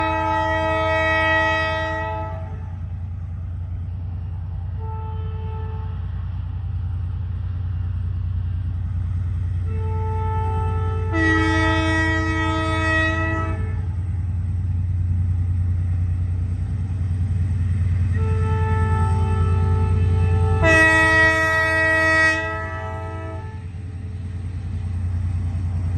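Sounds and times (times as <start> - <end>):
train horn blasts: 0.0 - 2.9, 4.7 - 6.2, 9.5 - 14.2, 17.8 - 23.9
train rumble: 0.0 - 25.9.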